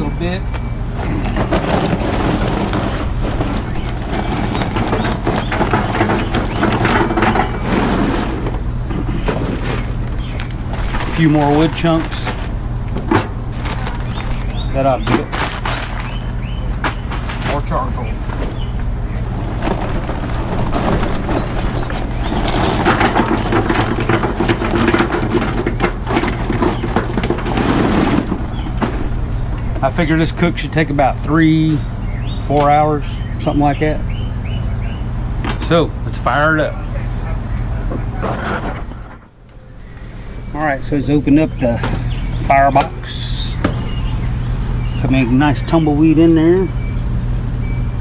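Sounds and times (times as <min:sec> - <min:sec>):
steady low hum: 0:00.0 - 0:48.0
charcoal clattering into metal hopper: 0:00.9 - 0:18.6, 0:19.2 - 0:30.4, 0:38.2 - 0:39.2.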